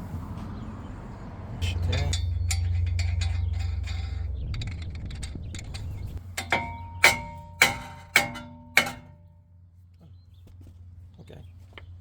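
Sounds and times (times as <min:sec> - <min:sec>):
hammer striking metal: 0:01.6 - 0:09.3
low steady hum: 0:01.6 - 0:09.9.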